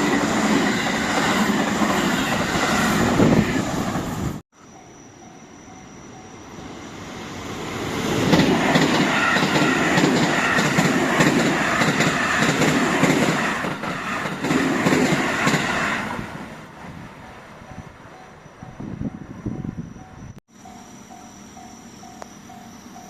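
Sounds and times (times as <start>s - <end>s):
train wheels clattering over rail joints: 8.2s - 15.8s.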